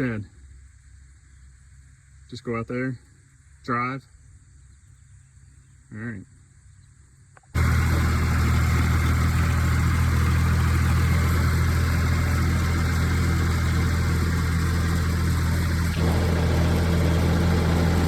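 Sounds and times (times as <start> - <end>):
farm vehicle engine running: 7.6 - 18.0.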